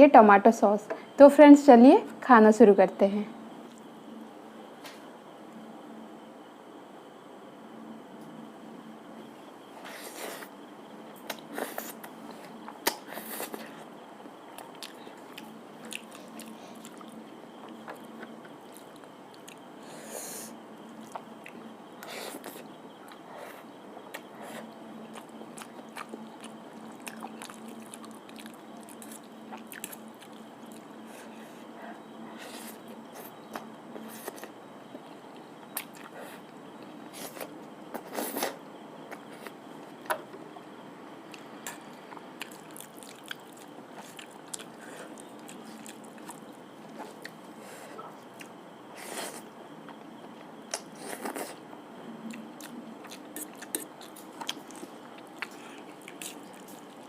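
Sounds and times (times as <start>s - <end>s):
crunching and chewing snacks: 41.3s - 47.4s, 52.3s - 57.0s.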